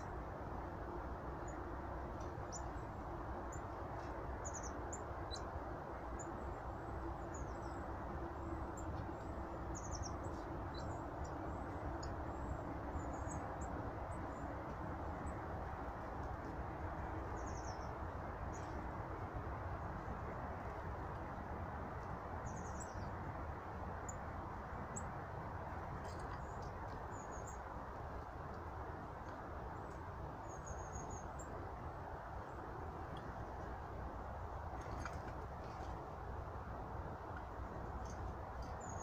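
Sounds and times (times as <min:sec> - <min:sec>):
small birds chirping: 0:04.4 - 0:05.5, 0:07.2 - 0:14.5, 0:17.3 - 0:18.8, 0:37.8 - 0:39.0.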